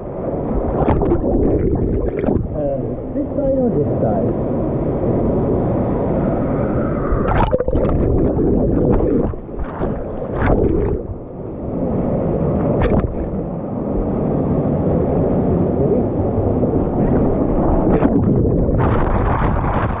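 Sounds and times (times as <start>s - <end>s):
muffled rushing water: 0.0s - 20.0s
sharp splashes or knocks: 12.8s - 13.4s.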